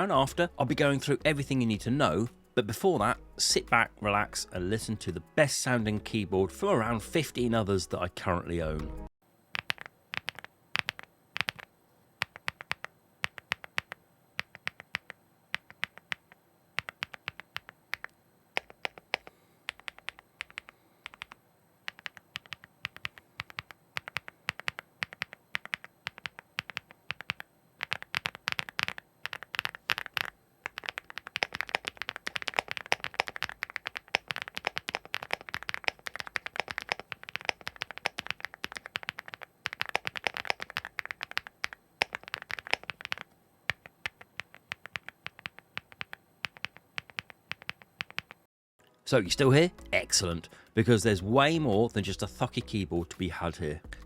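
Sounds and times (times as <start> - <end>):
mechanical keyboard typing: 9.6 - 48.4.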